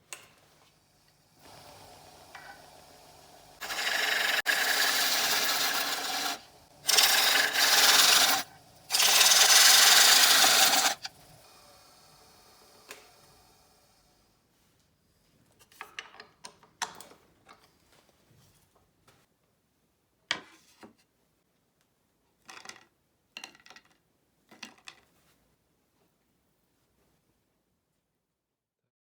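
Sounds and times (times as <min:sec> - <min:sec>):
wood lathe humming: 0:01.4 - 0:14.0
chisel scraping spinning wood: 0:03.5 - 0:11.2.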